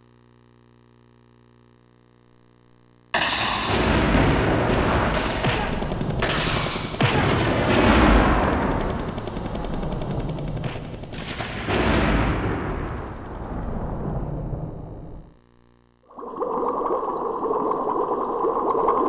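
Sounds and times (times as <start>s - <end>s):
synthesized blast boom: 3.2s - 15.4s.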